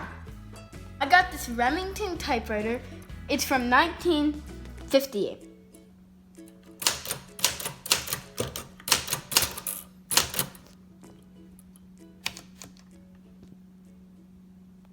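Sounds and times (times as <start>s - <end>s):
typewriter keys clacking: 6.8s - 10.7s, 12.3s - 12.8s.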